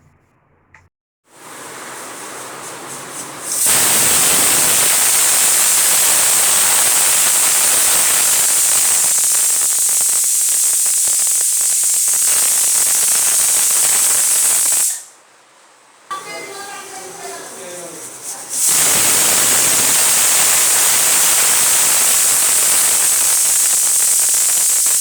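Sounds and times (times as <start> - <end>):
pressure cooker steam hiss: 1.3 - 15.2, 16.2 - 25.0.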